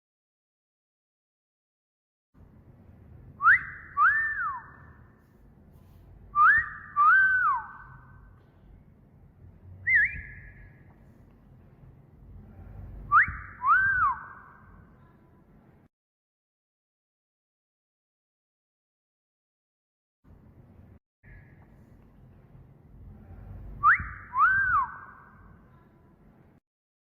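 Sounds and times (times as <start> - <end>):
wolf whistles: 3.4 - 5.0, 6.3 - 8.0, 9.8 - 10.7, 13.1 - 14.6, 23.8 - 25.4
single whistle note: 6.3 - 8.0, 9.8 - 10.8, 13.1 - 14.6, 23.8 - 25.5.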